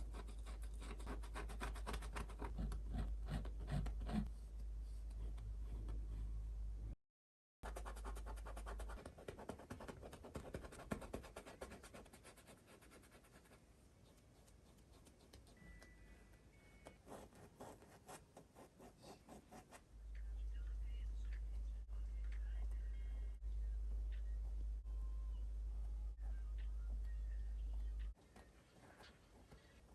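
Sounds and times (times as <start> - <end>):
paintbrush scrubbing canvas: 17.0 - 19.8.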